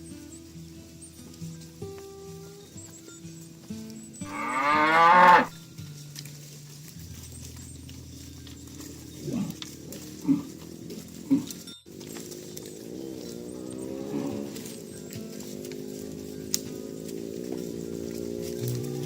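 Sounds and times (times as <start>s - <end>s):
cattle mooing: 4.2s - 5.6s, 8.6s - 19.0s.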